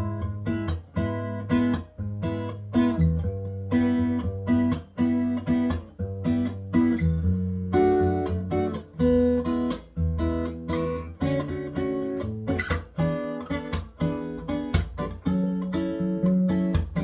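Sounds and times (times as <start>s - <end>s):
acoustic guitar bossa nova chords: 0.0s - 17.0s.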